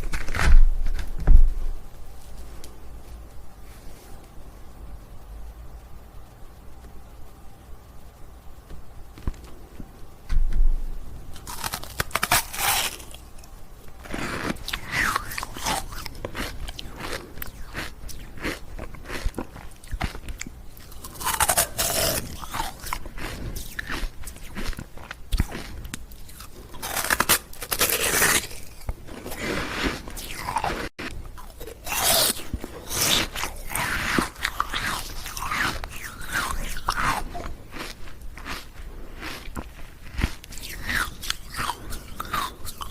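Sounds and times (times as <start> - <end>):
ice cubes crunching between teeth: 11.4 - 13.2, 14.0 - 42.9
quiet chewing: 11.4 - 42.9.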